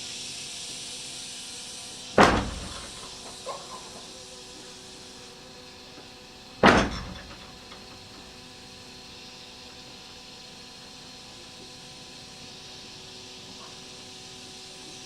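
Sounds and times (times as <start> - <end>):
sharp bang: 2.2 - 3.8, 6.6 - 7.8
steady hum: 2.2 - 4.0, 6.6 - 8.4.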